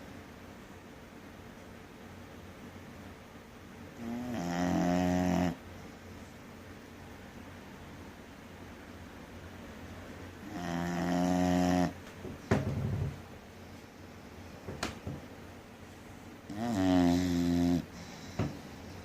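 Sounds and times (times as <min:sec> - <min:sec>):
dog snoring hard: 0:04.0 - 0:05.6, 0:10.4 - 0:12.0, 0:16.5 - 0:17.9.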